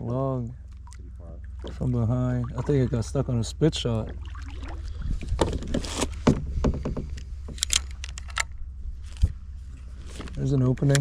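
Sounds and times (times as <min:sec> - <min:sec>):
steady low hum: 0:00.0 - 0:11.0
light knocks and clicks: 0:05.3 - 0:08.5.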